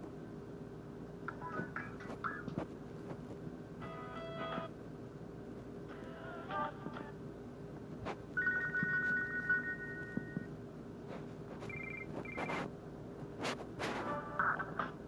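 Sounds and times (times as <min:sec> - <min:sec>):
two-pitch phone tone: 0:11.7 - 0:12.6.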